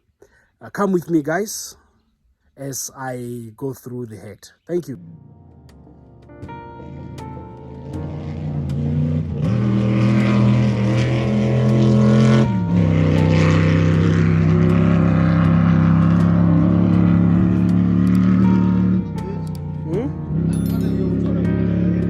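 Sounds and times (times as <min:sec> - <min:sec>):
vehicle engine revving: 0:06.6 - 0:22.0.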